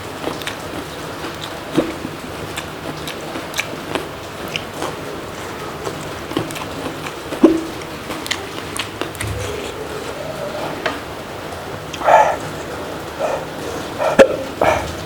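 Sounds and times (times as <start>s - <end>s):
mouth clicks and chewing: 0.0s - 15.0s
loud hiccup: 13.2s - 15.0s.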